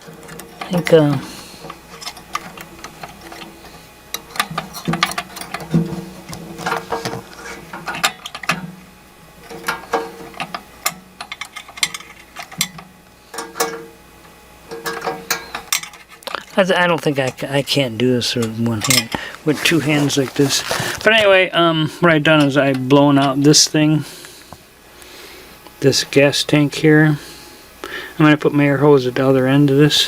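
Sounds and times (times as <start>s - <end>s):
small metal parts clicking and rattling: 0.0s - 8.7s, 9.4s - 14.0s, 14.7s - 16.6s, 18.3s - 19.2s.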